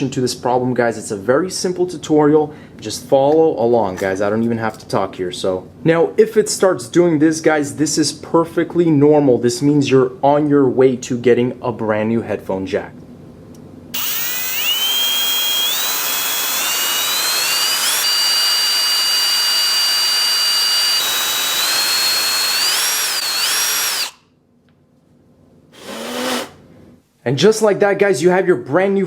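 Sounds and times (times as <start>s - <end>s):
electric drill whining: 14.0s - 24.2s, 25.8s - 26.6s.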